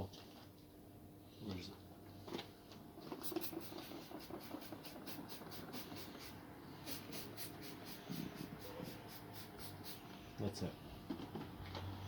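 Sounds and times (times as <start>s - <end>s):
trigger spray bottle spraying: 3.0s - 10.0s.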